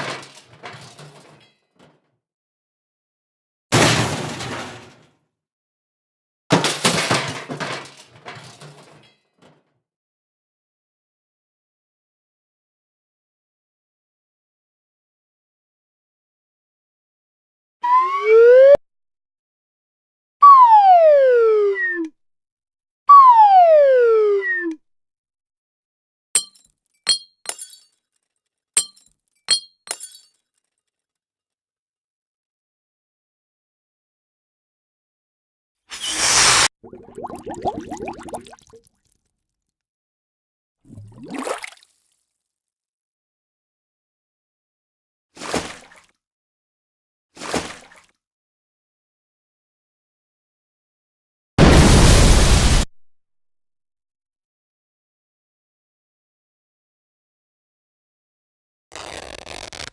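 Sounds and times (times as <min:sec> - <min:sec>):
crashing and breaking: 0:03.8 - 0:05.0, 0:06.5 - 0:09.0
falling whistle-like tone: 0:17.8 - 0:18.7
sharp glass clinks: 0:26.4 - 0:27.9, 0:28.8 - 0:30.3.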